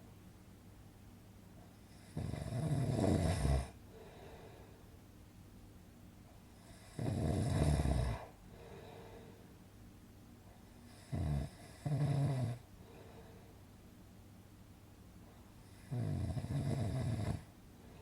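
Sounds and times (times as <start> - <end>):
snoring: 1.9 - 3.8, 6.6 - 8.3, 10.9 - 12.7, 15.6 - 17.5.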